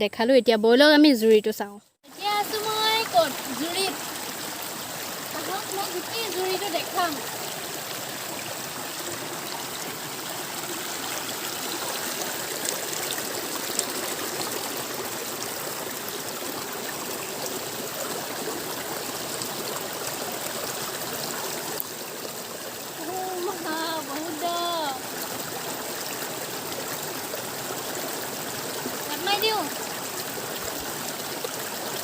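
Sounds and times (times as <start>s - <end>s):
stream water rushing and trickling: 2.0s - 32.0s.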